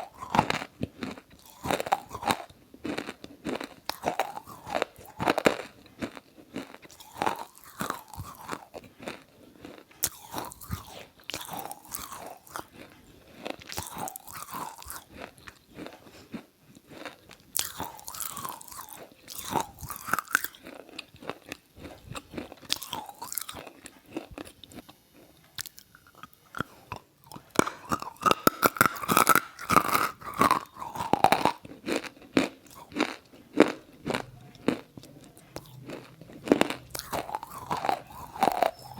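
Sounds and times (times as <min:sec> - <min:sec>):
crunching and chewing: 0:00.0 - 0:38.9.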